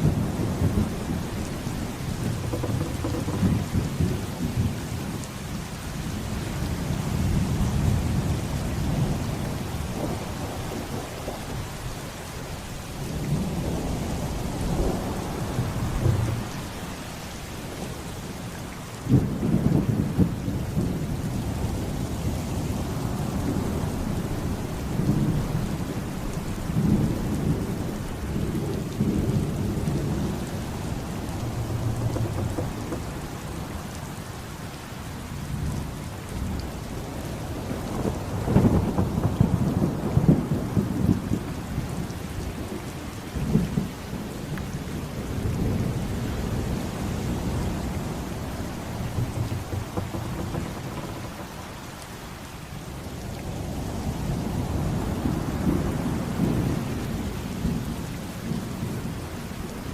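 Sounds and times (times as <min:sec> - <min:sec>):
thunder rolling: 0:00.0 - 0:05.1, 0:13.7 - 0:17.3, 0:29.0 - 0:34.6, 0:37.5 - 0:41.5, 0:47.9 - 0:52.5
steady rain: 0:00.0 - 0:59.9.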